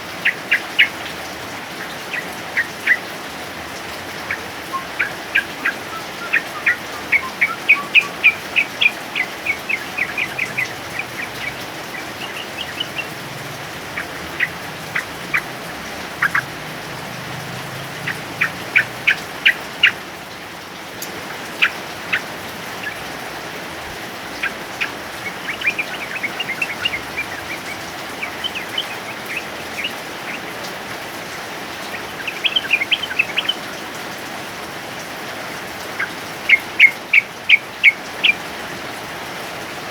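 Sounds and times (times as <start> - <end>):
rain hissing: 0.0 - 39.9
bird singing sharp notes: 4.3 - 16.5, 24.4 - 30.6.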